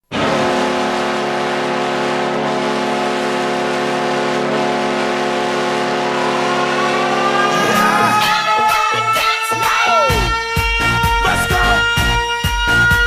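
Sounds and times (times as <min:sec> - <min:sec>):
goal horn blowing: 0:01.5 - 0:13.0.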